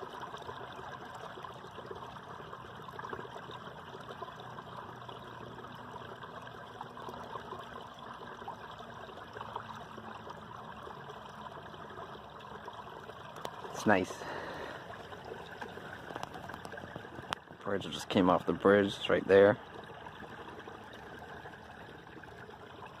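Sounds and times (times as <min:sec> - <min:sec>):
stream water flowing under ice: 0:00.0 - 0:23.0.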